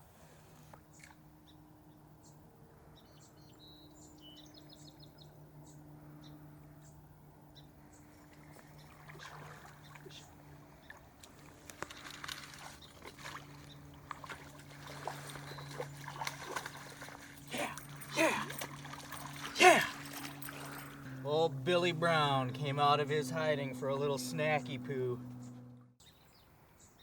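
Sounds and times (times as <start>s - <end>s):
steady low hum: 0.0s - 26.0s
bird chirping: 3.0s - 9.0s.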